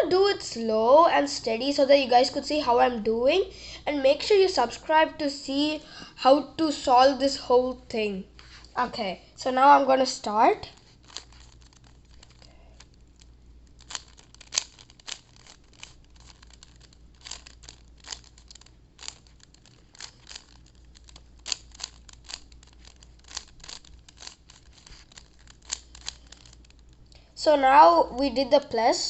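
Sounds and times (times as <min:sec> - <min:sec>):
puzzle cube plastic clicks: 0:10.8 - 0:27.1.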